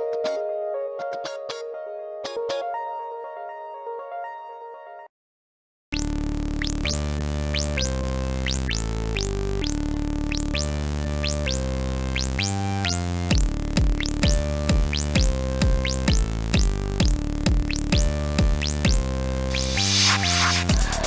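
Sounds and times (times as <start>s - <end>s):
drum-machine beat: 6.0s - 21.0s
electronic synthesizer music: 6.0s - 21.0s.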